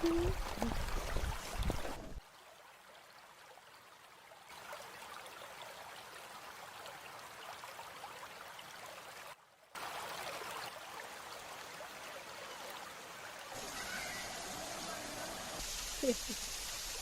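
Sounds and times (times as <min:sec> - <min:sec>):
waterfall rushing: 0:13.6 - 0:17.0.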